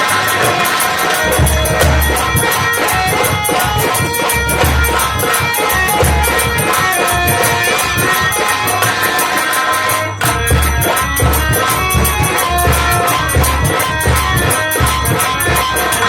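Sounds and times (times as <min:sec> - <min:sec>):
jingling small percussion: 0:00.0 - 0:16.0.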